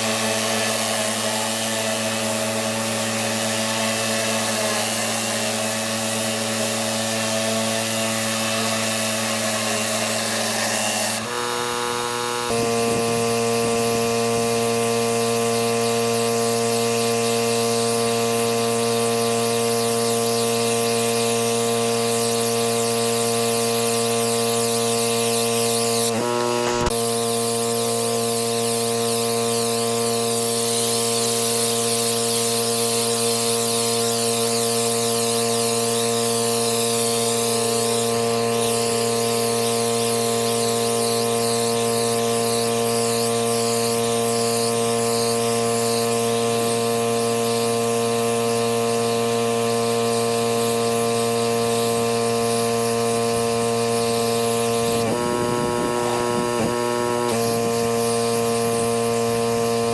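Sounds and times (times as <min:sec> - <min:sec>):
pressure washer running: 0:00.0 - 0:59.9
water jet hissing: 0:12.5 - 0:39.5, 0:50.1 - 0:59.9.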